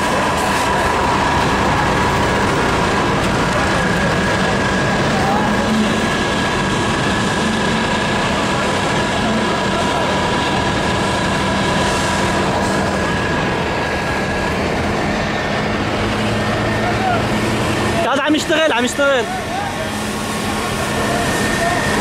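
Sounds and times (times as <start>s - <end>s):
engine droning: 0.0s - 22.0s.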